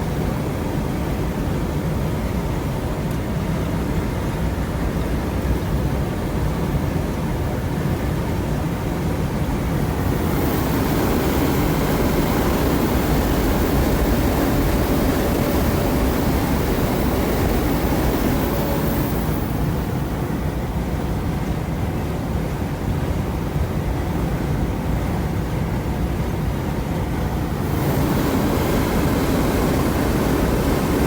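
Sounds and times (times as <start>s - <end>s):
truck engine and road noise: 0.0s - 31.0s
hissing rush: 9.8s - 20.5s, 27.5s - 31.0s.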